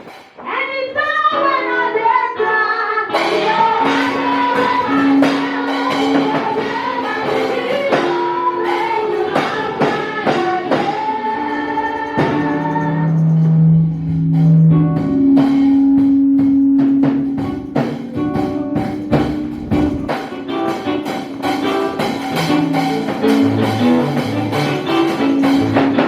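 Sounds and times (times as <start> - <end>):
drum beats: 0.0 - 1.2, 3.1 - 26.0
group singing gospel: 3.1 - 13.8
band playing: 3.1 - 26.0.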